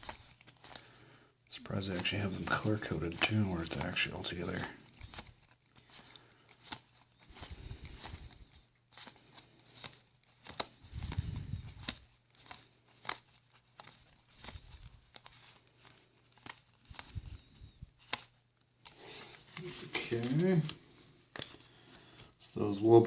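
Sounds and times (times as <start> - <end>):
cards clicking and snapping: 0.0 - 21.6.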